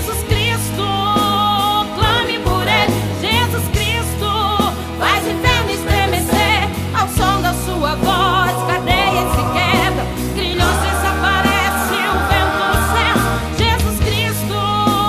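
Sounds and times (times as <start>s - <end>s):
woman singing with vibrato: 6.3s - 14.4s
gospel band playing: 7.8s - 14.2s.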